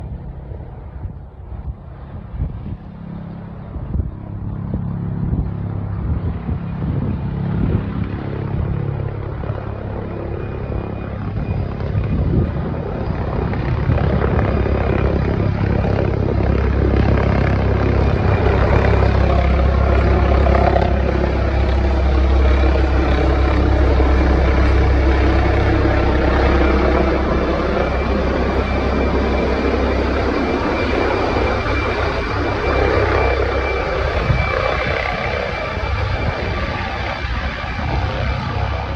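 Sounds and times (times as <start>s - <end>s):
helicopter rotor and engine: 0.0s - 38.9s.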